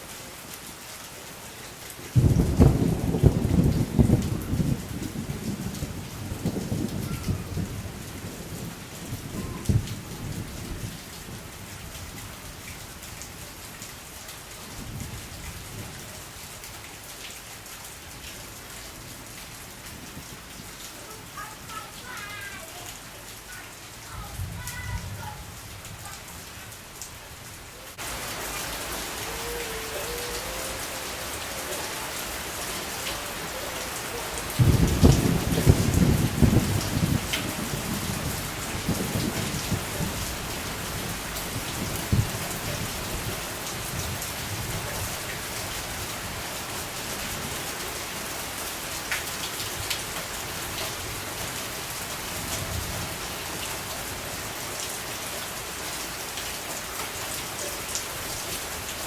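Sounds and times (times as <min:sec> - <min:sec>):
steady rain falling: 0:00.0 - 0:59.0
thunder rumbling: 0:02.2 - 0:10.9, 0:27.9 - 0:44.9.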